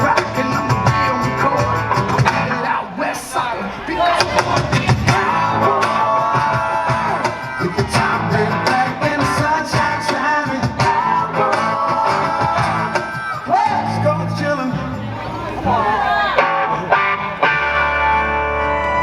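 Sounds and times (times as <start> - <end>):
steady drum beat: 3.8 - 13.1
electric guitar: 16.2 - 19.0
live rock band playing: 16.3 - 19.0.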